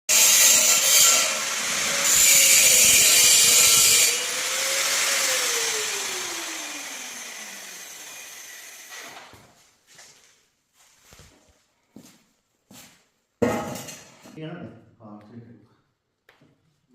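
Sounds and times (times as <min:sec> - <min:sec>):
power saw cutting: 0:00.1 - 0:09.2
saw blade spinning down: 0:00.1 - 0:09.2.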